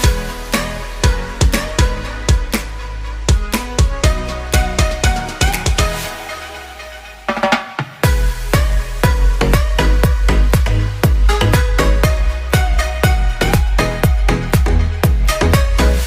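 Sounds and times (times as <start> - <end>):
steady drum beat: 0.0 - 6.2, 7.3 - 16.0
electronic dance music: 0.0 - 16.0
heavy bass: 0.0 - 16.0
drum fill: 7.3 - 15.9.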